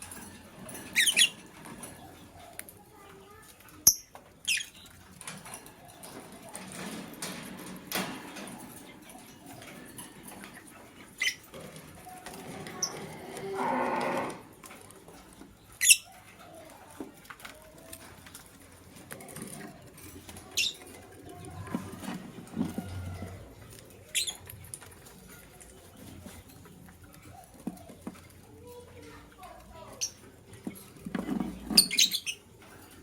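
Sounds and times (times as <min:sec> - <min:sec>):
pecking and scratching: 0:00.0 - 0:33.0
lovebirds chirping: 0:15.4 - 0:16.7, 0:20.4 - 0:32.6.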